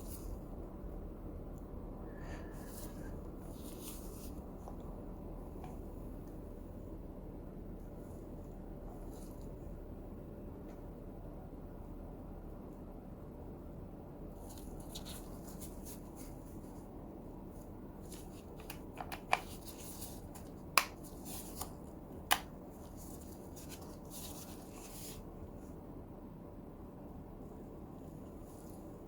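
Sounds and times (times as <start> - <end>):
packaging rustling: 18.0 - 25.2.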